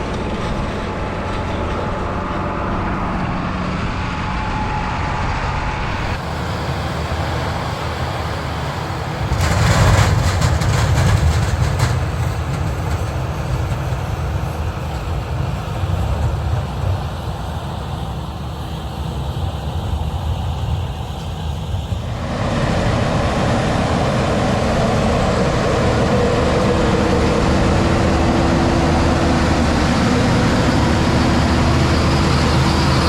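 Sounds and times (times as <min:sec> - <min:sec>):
heavy harvest machinery running: 0:00.0 - 0:33.0
fast clattering rattle: 0:09.2 - 0:14.0.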